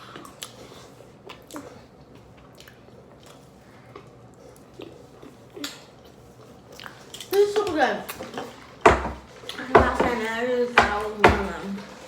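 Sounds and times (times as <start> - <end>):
person chewing food: 0.0 - 7.3.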